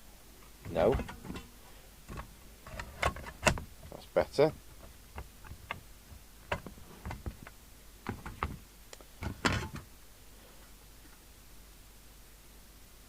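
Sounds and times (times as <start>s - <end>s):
parts clicking and knocking: 0.4s - 9.9s.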